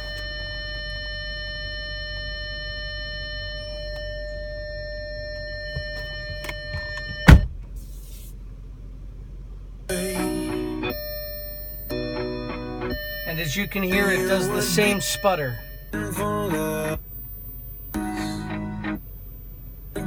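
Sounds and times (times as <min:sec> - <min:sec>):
cd changer mechanical whine: 0:09.9 - 0:20.0.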